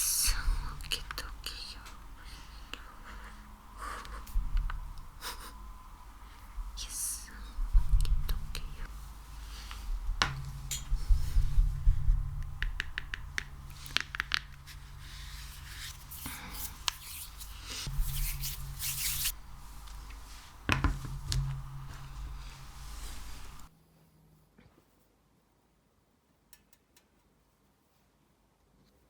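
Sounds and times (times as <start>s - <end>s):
sticky slime clicks and rubbing: 12.4s - 14.8s.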